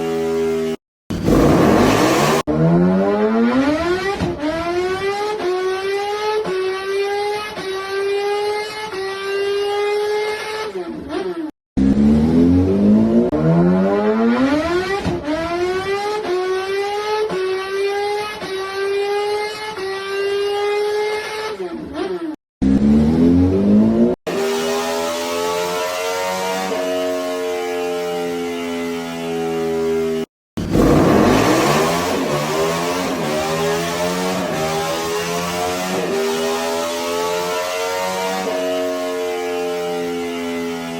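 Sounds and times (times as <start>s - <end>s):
motorcycle engine accelerating hard: 0.0s - 6.0s, 11.8s - 16.9s, 22.6s - 40.9s.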